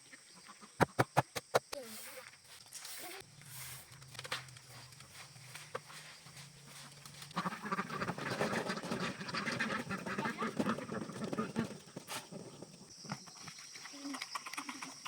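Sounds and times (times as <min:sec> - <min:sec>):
flock of ducks quacking: 0:05.6 - 0:11.8.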